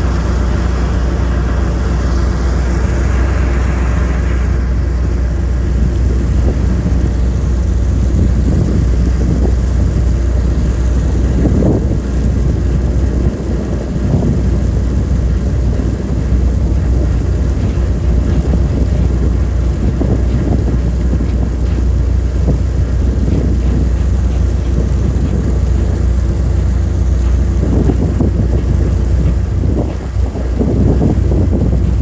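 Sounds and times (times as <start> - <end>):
ship engines droning: 0.0 - 32.0
wind buffeting microphone: 0.0 - 32.0.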